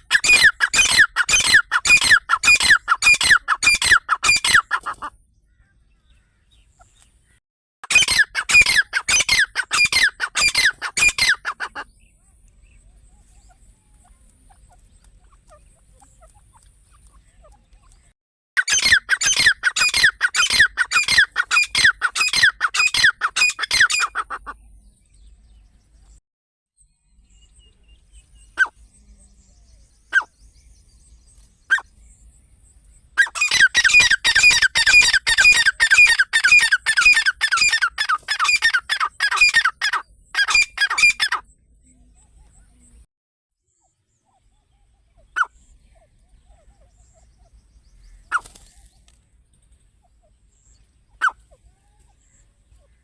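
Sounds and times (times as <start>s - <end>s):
partridge calling: 0.0s - 24.7s, 28.5s - 28.8s, 30.1s - 30.3s, 31.7s - 32.0s, 33.2s - 41.5s, 43.8s - 48.9s, 50.0s - 53.0s.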